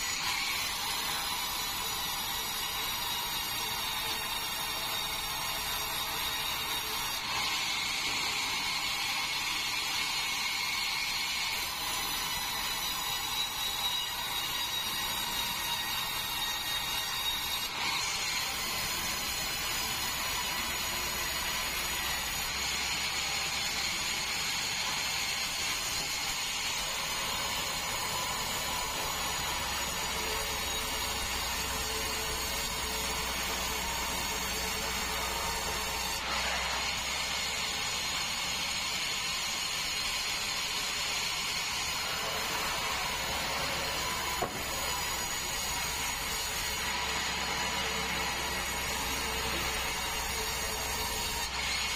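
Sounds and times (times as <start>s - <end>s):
band saw cutting log: 0.0s - 51.9s.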